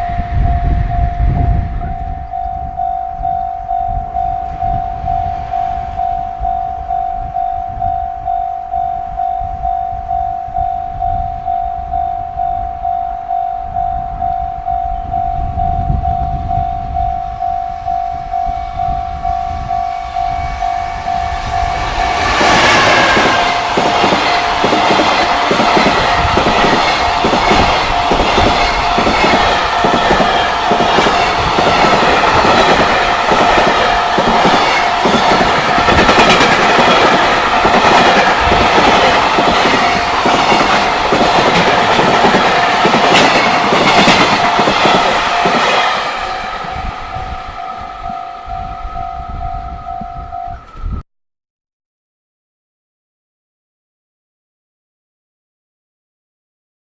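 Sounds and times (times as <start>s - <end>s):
freight train passing: 0.0s - 51.0s
level crossing warning bell: 0.0s - 51.0s
train wheels clicking over rail joints: 22.2s - 46.8s.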